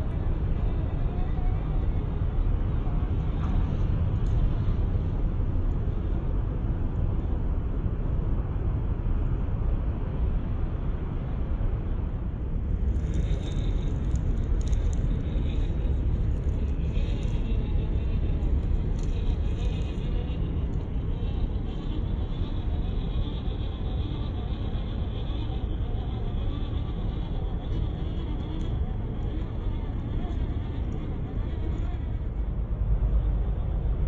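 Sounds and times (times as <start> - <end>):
toy truck motor rumble: 12.8 - 34.0.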